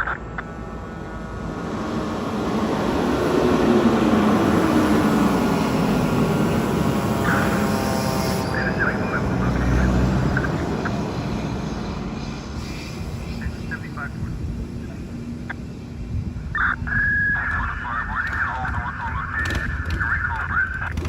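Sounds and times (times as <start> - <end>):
fire truck driving past: 0.0 - 16.6.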